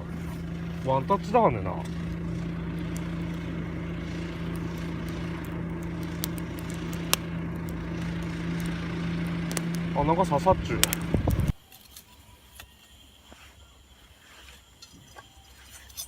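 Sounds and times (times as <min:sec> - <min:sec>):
campfire crackling: 0:00.0 - 0:15.8
low mechanical hum: 0:00.0 - 0:16.0.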